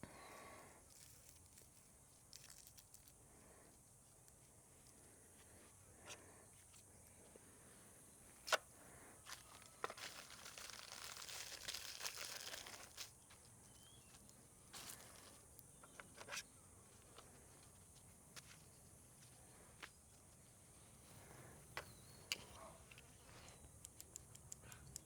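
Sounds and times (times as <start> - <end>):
soft crinkling and rustling: 0.0 - 24.3
plastic parts clicking: 21.8 - 25.0.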